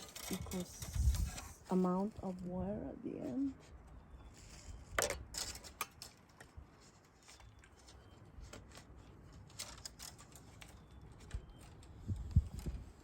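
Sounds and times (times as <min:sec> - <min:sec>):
wire clicking and scratching on wicker: 0:00.0 - 0:02.5, 0:05.3 - 0:13.0.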